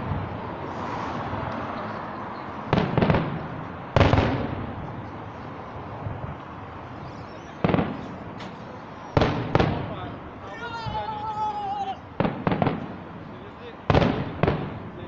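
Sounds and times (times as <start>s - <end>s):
rolling echo: 2.6s - 5.5s, 6.4s - 10.4s, 12.1s - 15.0s
fireworks bursting with bangs: 2.7s - 4.9s, 7.5s - 10.4s, 12.1s - 15.0s.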